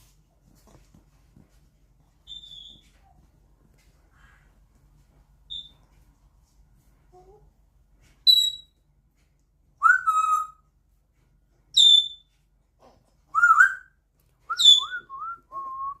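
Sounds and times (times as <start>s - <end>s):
parrot whistling: 9.8s - 10.6s, 13.3s - 13.9s, 14.5s - 15.7s.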